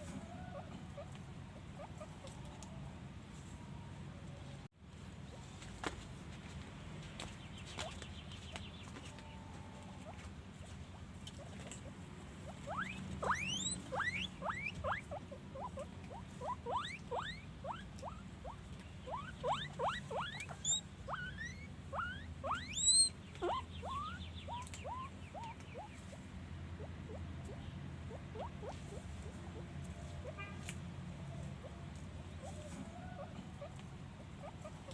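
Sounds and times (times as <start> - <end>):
guinea pig squealing: 0.0 - 2.4, 11.4 - 26.2, 26.8 - 30.4, 32.4 - 34.9.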